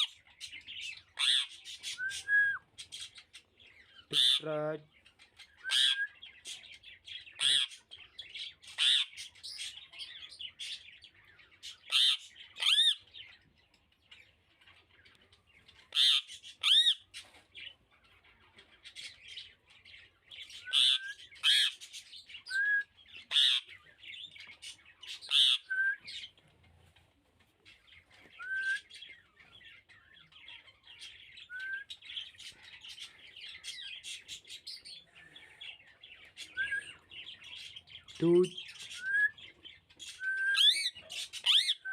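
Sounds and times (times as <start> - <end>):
parakeet shrill calls: 0.9 - 3.4, 5.5 - 6.2, 8.7 - 9.6, 11.9 - 13.1, 15.9 - 17.2, 20.6 - 23.8, 25.0 - 26.2, 40.0 - 41.9.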